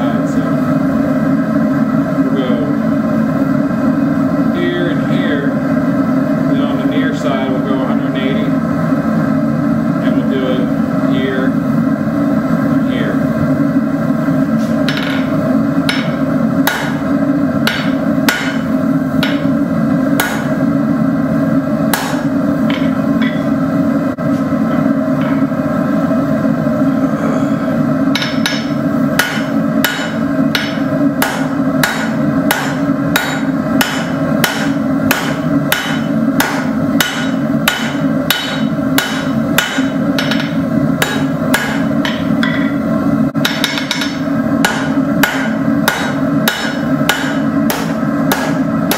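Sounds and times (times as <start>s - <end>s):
hammer striking steel on anvil: 14.8s - 17.0s, 17.6s - 19.6s, 20.2s - 20.6s, 21.9s - 23.5s, 28.1s - 42.8s, 43.4s - 48.9s.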